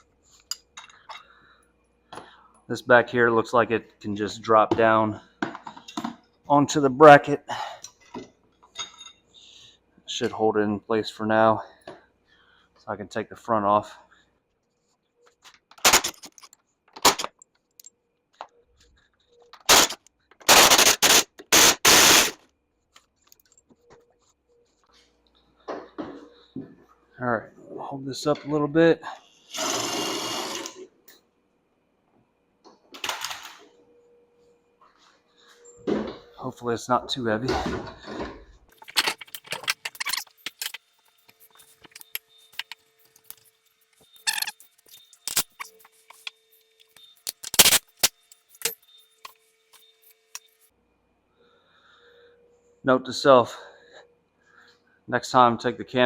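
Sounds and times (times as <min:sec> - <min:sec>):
metallic clinks and rattles: 0:38.7 - 0:43.5.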